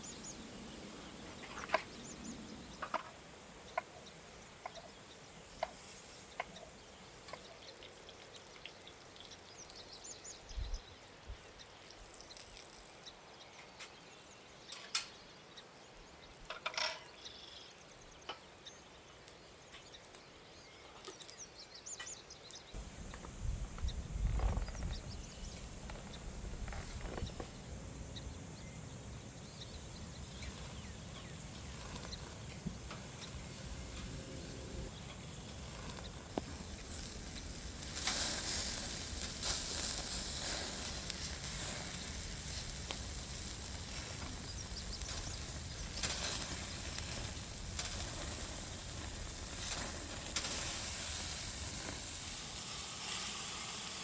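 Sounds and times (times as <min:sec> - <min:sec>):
patties sizzling on a grill: 0:00.0 - 0:10.4, 0:22.7 - 0:27.8, 0:29.4 - 0:54.0.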